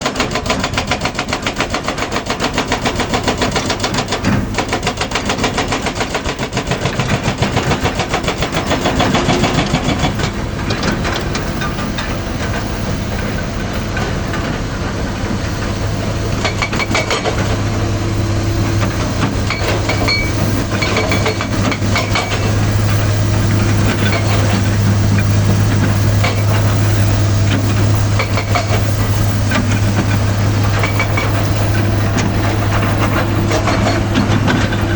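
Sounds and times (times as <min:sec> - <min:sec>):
diesel engine pulsing: 0:00.0 - 0:34.9
steady low hum: 0:07.4 - 0:34.9.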